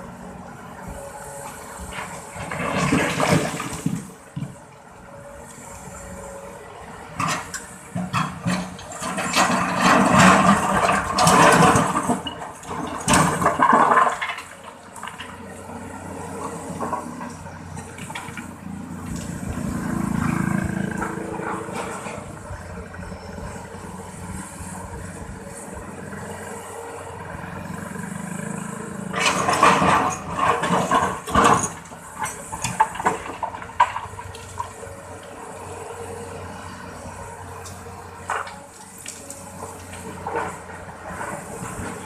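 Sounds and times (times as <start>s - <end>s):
excavator engine running: 0.0s - 42.0s
earth dumped rushing and clattering: 2.4s - 4.1s.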